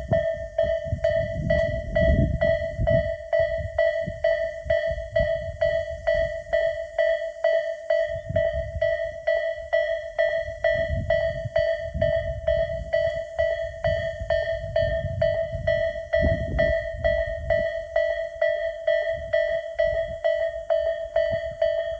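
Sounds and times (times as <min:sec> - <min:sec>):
low rumble: 0:00.0 - 0:06.3
level-crossing electronic bell: 0:00.0 - 0:21.9.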